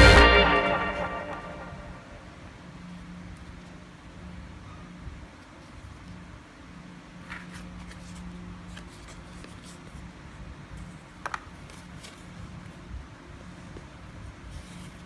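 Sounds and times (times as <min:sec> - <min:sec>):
low steady hum: 0:00.0 - 0:03.0.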